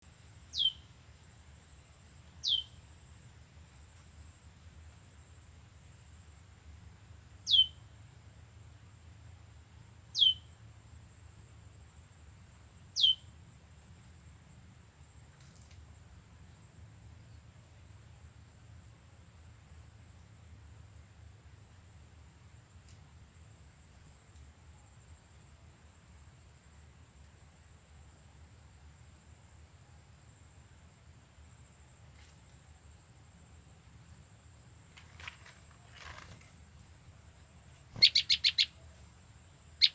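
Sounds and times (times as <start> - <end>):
songbird sharp downward calls: 0.5 - 0.9, 2.4 - 2.8, 7.5 - 7.8, 10.2 - 10.5, 13.0 - 13.2, 37.9 - 39.0.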